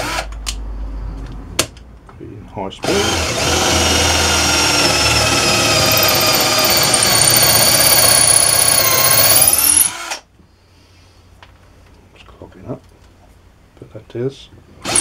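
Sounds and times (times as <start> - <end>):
cordless drill boring into wood: 2.8 - 10.2.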